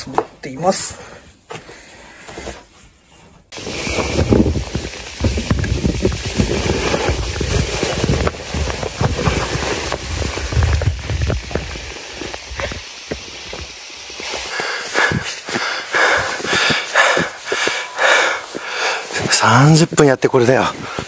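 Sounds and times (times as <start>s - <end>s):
footsteps crunching in deep snow: 3.5s - 21.0s
wind rumble on microphone: 3.7s - 11.9s.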